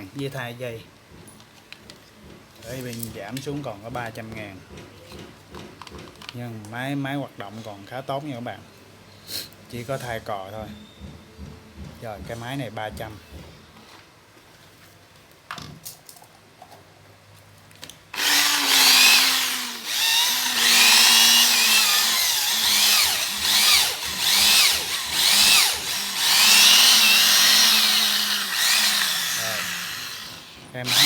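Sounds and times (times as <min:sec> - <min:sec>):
cordless drill revving: 0:18.2 - 0:31.0.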